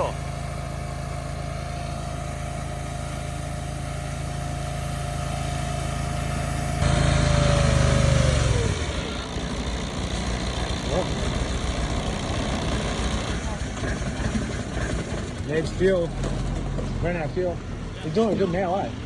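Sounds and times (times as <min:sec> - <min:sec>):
small petrol engine whining: 0:00.0 - 0:19.0.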